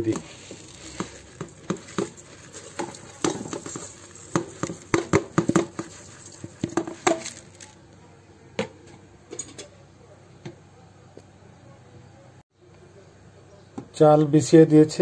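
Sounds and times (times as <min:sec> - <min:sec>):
rice pattering into a pot: 0:00.0 - 0:07.9.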